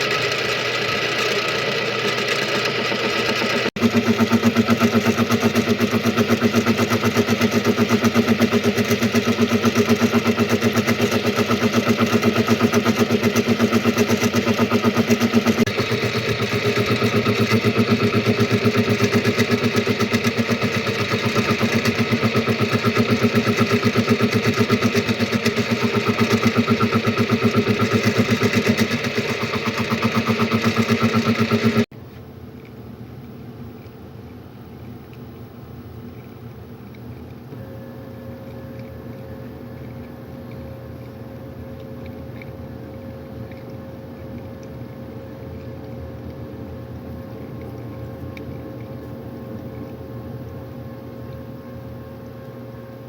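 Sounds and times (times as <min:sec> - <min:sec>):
machine cutting metal gear: 0:00.0 - 0:31.9.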